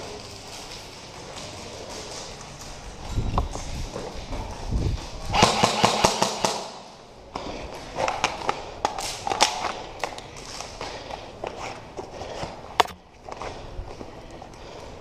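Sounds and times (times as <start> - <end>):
sharp cracks and clatter: 0.0 - 6.9, 7.7 - 11.6.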